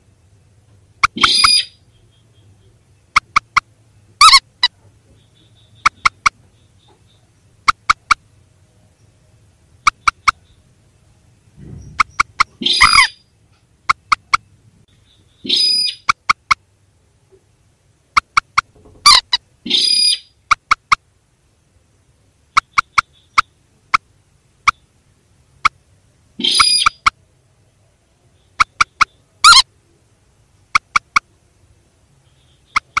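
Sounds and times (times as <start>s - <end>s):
harsh raspy bird calls: 0.9s - 8.3s, 9.8s - 10.7s, 11.6s - 16.6s, 18.1s - 21.0s, 22.4s - 24.0s, 26.4s - 27.2s, 28.4s - 29.8s, 30.7s - 31.4s, 32.2s - 33.0s
quick sharp bird pips: 11.6s - 13.2s, 32.7s - 33.0s.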